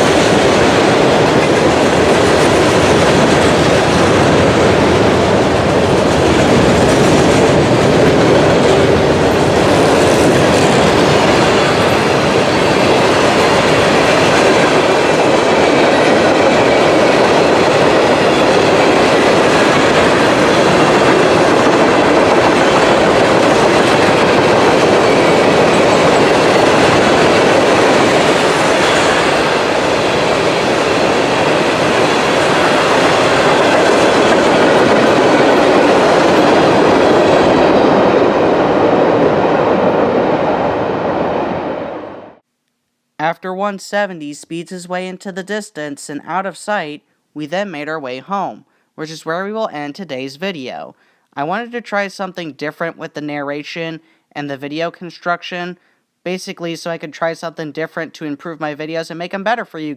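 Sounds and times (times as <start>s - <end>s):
freight train wheels clattering: 0.0s - 38.9s.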